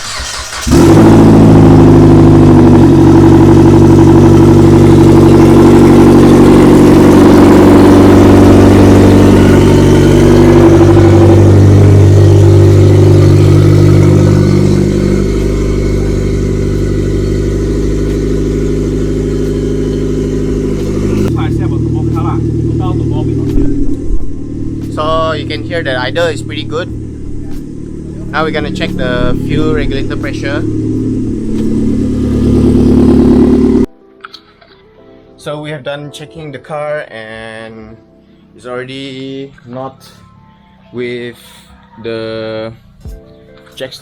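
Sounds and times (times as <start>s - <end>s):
car engine starting and idling: 0.0s - 33.9s.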